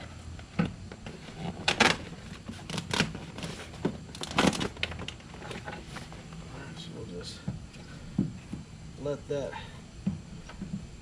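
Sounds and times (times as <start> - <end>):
clicks knocks and crinkles: 0.4 - 6.4.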